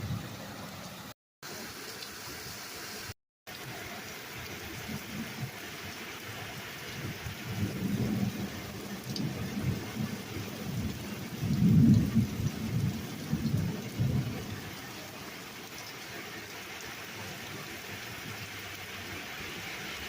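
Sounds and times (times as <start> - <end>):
steady rain falling: 0.0 - 20.0
rolling thunder rumble: 7.0 - 14.8.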